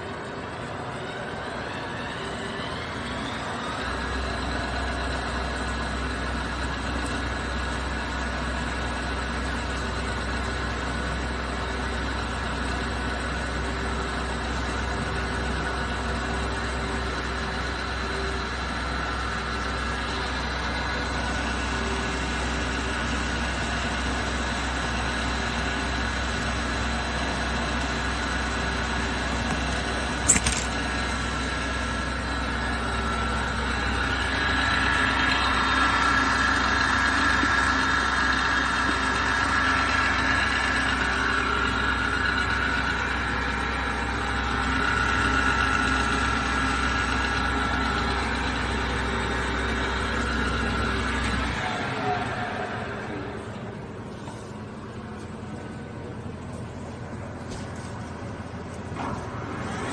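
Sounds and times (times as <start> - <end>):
metal lathe motor hum: 0.0 - 56.4
sharp click: 29.5 - 30.8.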